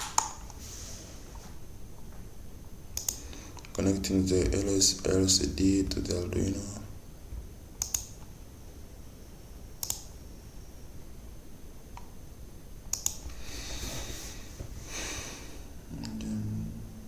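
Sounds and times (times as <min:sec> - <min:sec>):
computer mouse clicking: 0:03.0 - 0:03.7, 0:07.8 - 0:08.3, 0:09.8 - 0:10.1, 0:12.9 - 0:13.3.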